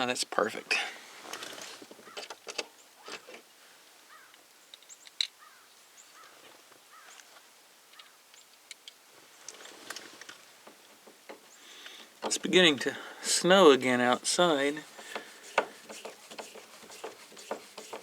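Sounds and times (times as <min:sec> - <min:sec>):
faint bird chirps: 0:04.1 - 0:07.3.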